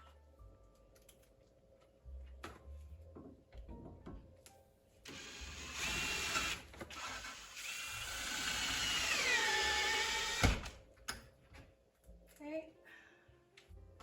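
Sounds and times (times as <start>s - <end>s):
drill stopping knock: 5.1s - 10.6s
power drill driving screws: 5.1s - 10.7s.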